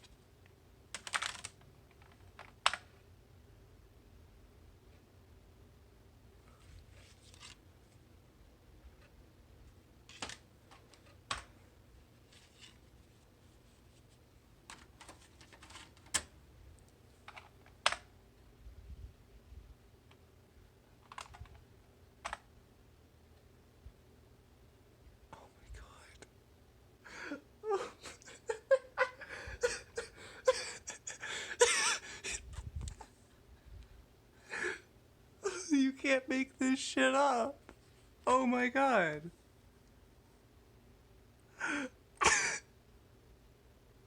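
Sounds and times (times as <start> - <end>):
faint low hum: 0.0 - 44.0
man laughing: 27.7 - 32.5.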